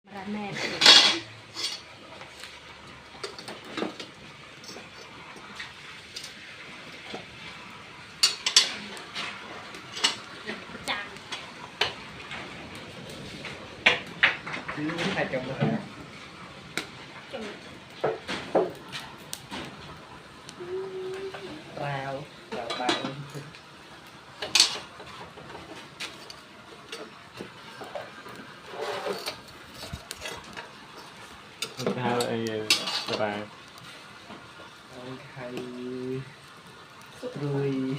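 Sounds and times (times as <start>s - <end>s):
utensil scraping a pot: 0.4s - 2.2s, 27.8s - 33.4s
kitchen utensils clinking: 0.6s - 2.0s, 8.2s - 12.0s, 22.5s - 23.5s, 24.4s - 27.2s, 27.8s - 33.3s.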